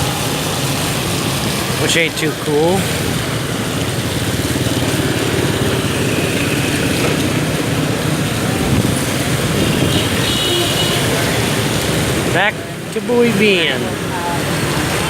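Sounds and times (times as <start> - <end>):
tyre noise on wet road: 0.0 - 15.0
motorbike engine running: 2.8 - 10.6.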